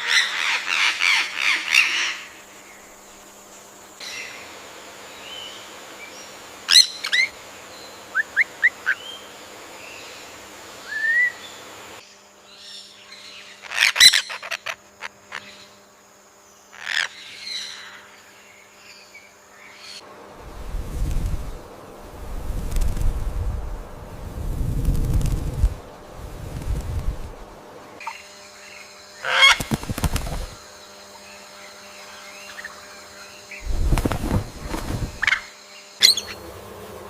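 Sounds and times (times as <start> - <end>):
faint steady background noise: 0.0 - 37.0
loud bird calls: 12.6 - 15.7, 16.7 - 19.0, 28.0 - 30.6, 32.0 - 36.5.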